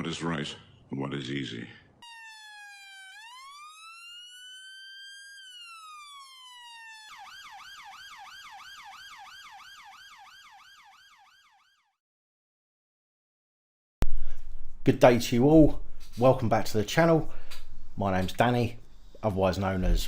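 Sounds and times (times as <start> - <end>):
electronic police siren: 2.0 - 12.0.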